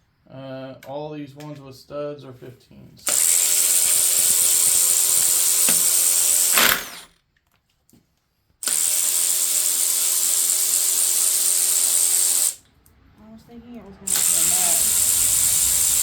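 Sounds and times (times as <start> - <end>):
power ratchet whirring: 3.1 - 7.1, 8.6 - 12.6, 14.1 - 16.0.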